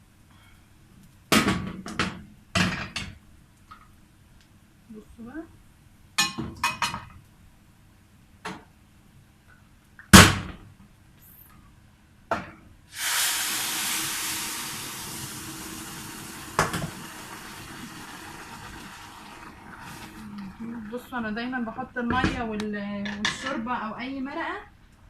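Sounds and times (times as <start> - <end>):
broth sizzling in hot pot: 12.9 - 21.8.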